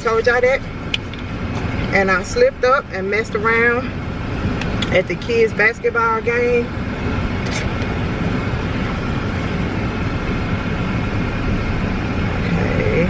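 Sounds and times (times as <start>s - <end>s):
car interior low hum: 0.0s - 13.0s.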